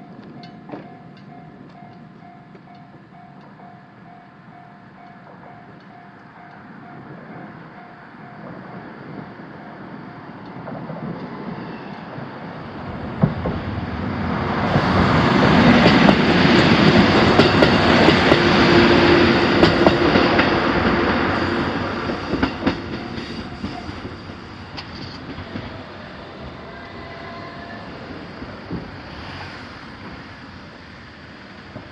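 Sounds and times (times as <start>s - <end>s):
diesel railcar passing: 0.0s - 31.9s
wheels clacking over rail joints: 12.9s - 31.9s.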